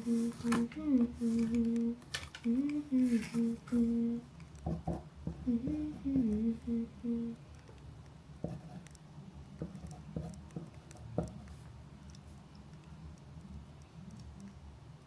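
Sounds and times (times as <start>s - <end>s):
person humming a tune: 0.0s - 4.3s, 5.4s - 7.4s.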